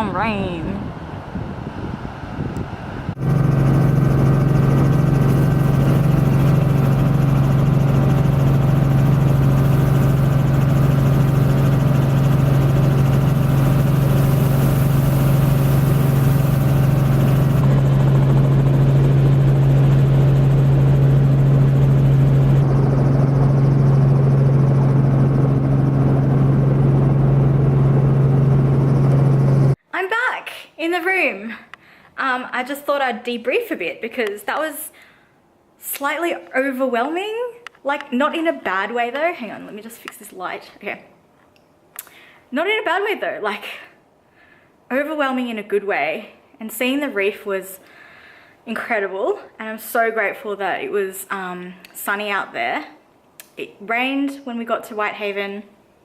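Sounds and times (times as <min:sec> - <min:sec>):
helicopter drone: 0:00.0 - 0:29.8.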